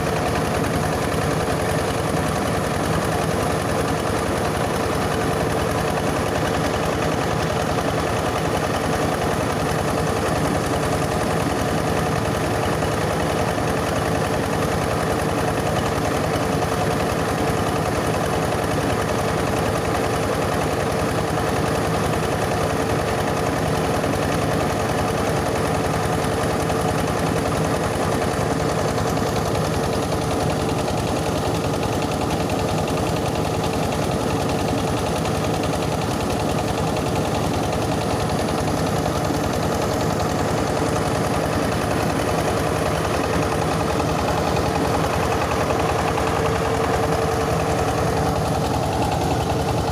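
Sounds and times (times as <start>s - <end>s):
rice huller working: 0.0s - 49.9s
diesel engine running: 27.8s - 49.9s.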